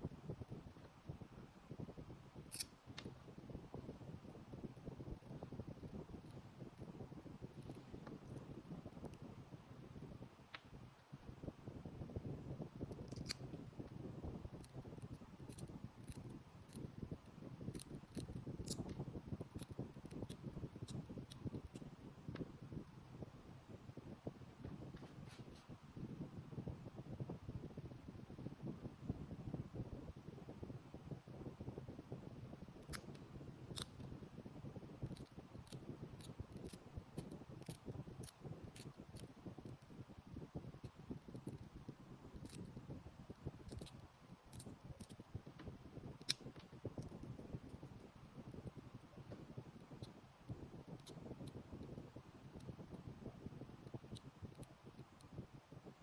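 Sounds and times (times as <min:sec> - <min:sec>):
sharp clicks and snips: 0:02.5 - 0:03.1, 0:12.9 - 0:13.5, 0:17.7 - 0:21.8, 0:32.8 - 0:34.0, 0:35.1 - 0:39.8, 0:42.4 - 0:42.7, 0:43.7 - 0:45.2
rustling and scraping: 0:25.0 - 0:25.7.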